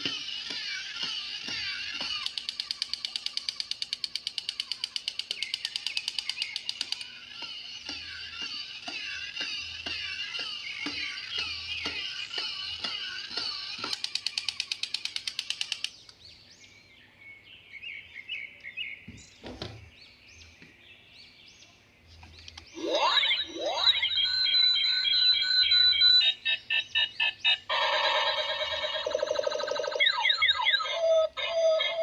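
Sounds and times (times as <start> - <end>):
electronic toy buzzing pulse: 0.0 - 15.9, 22.8 - 32.0
steady toy clicking: 0.0 - 16.2
faint electronic chirps: 22.7 - 32.0
warbling high electronic tones: 22.8 - 32.0.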